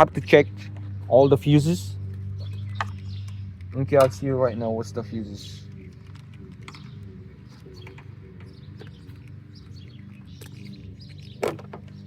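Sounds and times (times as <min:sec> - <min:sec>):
faint birds chirping: 0:00.0 - 0:12.0
steady low hum: 0:00.0 - 0:12.0.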